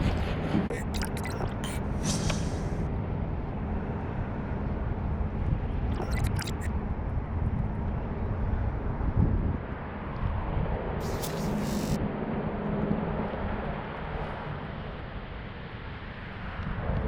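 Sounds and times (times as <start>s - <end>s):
brief clicks: 6.0s - 6.7s, 11.0s - 12.0s
wind buffeting microphone: 7.0s - 11.0s.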